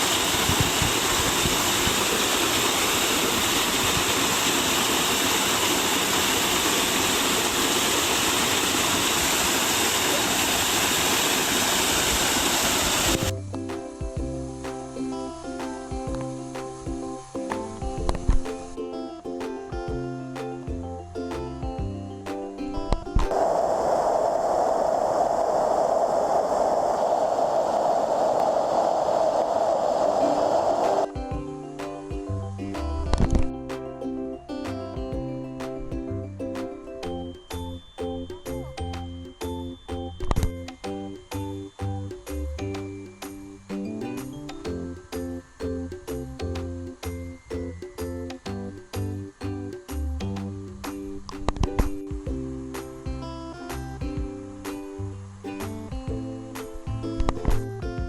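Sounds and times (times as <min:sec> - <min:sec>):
stream rushing over waterfalls: 0:00.0 - 0:18.8, 0:23.2 - 0:31.2
music: 0:13.0 - 0:23.3, 0:31.1 - 0:58.0.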